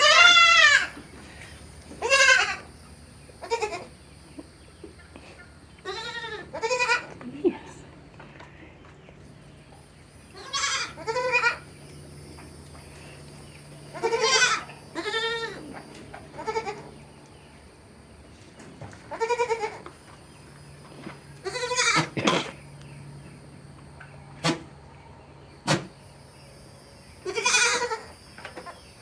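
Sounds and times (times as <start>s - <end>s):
goats bleating: 0.0s - 2.7s, 3.4s - 3.9s, 5.8s - 8.9s, 10.4s - 11.7s, 13.9s - 17.0s, 19.0s - 20.0s, 21.4s - 22.6s, 27.2s - 28.1s.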